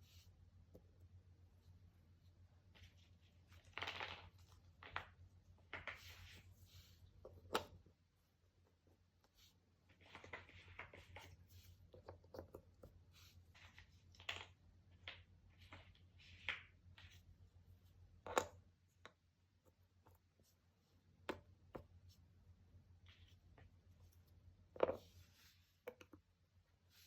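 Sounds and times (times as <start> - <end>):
cardboard puzzle pieces sliding: 5.7 - 7.8.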